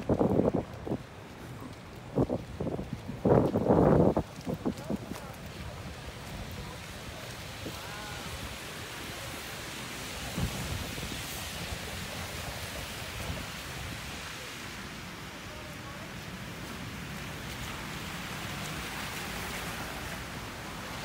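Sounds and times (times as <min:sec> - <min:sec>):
blizzard wind hissing: 0:07.4 - 0:15.3.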